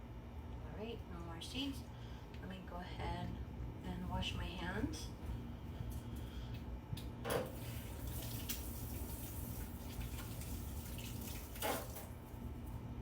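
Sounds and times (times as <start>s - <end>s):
tap water running into sink: 7.4s - 12.2s
hands washing under water: 7.5s - 12.1s.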